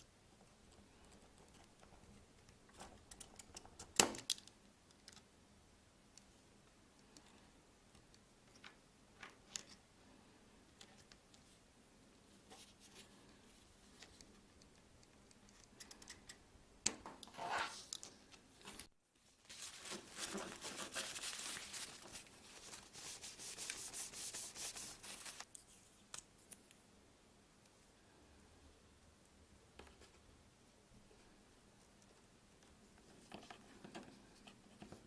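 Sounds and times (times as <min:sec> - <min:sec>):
rubbing and scraping: 0:19.5 - 0:25.5.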